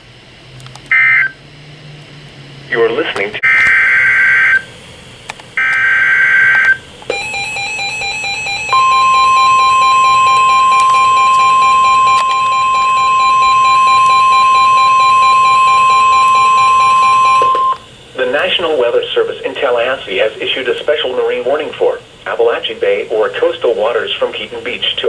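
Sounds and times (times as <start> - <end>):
buzzy data bursts: 2.7 - 25.0
rapidly pulsing beep: 3.4 - 4.7, 5.6 - 20.6
steady high alarm tone: 3.4 - 25.0.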